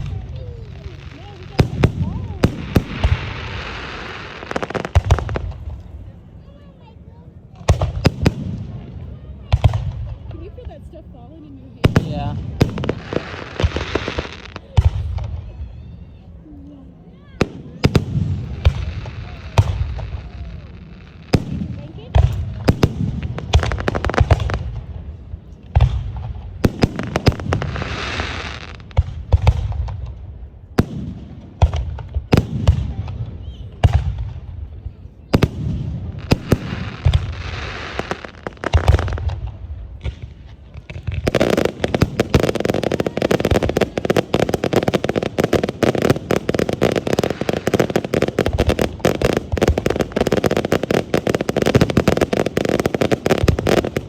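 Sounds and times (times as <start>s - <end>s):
firework shells booming: 0.0s - 5.8s, 35.3s - 54.0s
rapid firework pops and crackles: 0.0s - 6.0s, 7.5s - 10.6s, 11.8s - 15.8s, 17.4s - 54.0s
crackling hiss: 0.0s - 6.6s, 11.8s - 15.7s, 16.6s - 34.6s, 35.3s - 54.0s.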